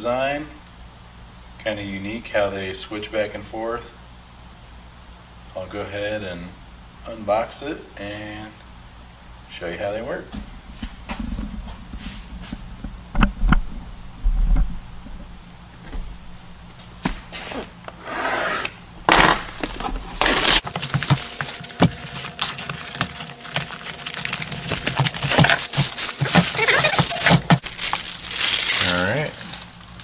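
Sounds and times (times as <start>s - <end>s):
short scraping sounds: 17.3s - 21.6s
packaging rustling and crinkling: 19.1s - 30.0s.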